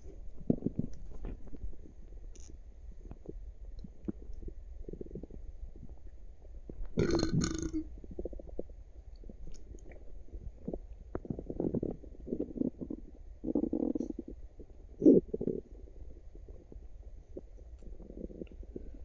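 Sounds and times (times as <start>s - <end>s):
stomach gurgling and rumbling: 0.0s - 19.0s
person burping: 7.0s - 7.8s.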